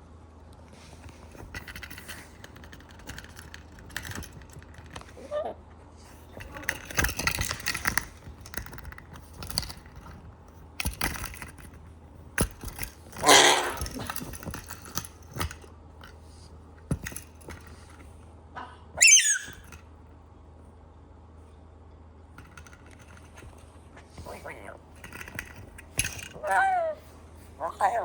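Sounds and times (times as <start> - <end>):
short rising squeak: 19.0 - 19.7
metal pieces jangling and clinking: 25.0 - 26.9.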